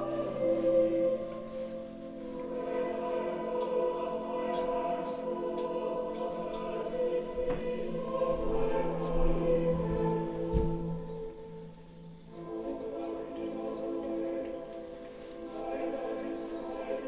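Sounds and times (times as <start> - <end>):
voices singing slow chant: 0.0 - 17.0.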